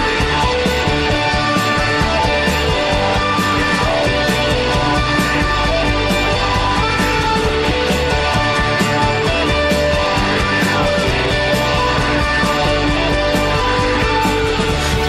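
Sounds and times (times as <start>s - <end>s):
instrumental rock music: 0.0s - 15.0s.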